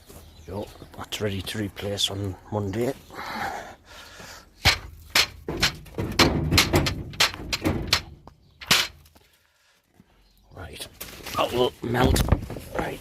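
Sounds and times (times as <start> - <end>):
objects knocking and thudding: 4.6 - 9.2.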